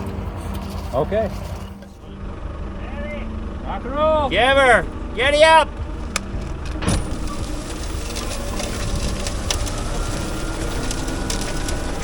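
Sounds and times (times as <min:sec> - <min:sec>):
tractor engine running: 0:00.0 - 0:12.0
rattles and clicks: 0:04.4 - 0:12.0.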